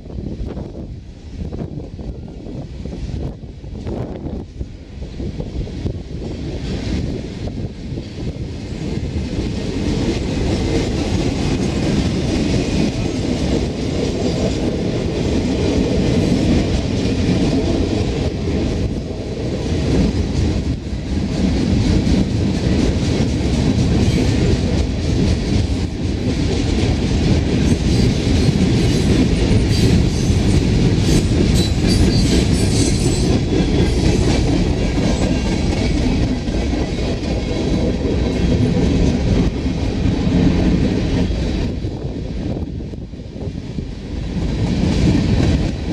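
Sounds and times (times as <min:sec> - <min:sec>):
train wheels clacking over rail joints: 0:08.6 - 0:41.9.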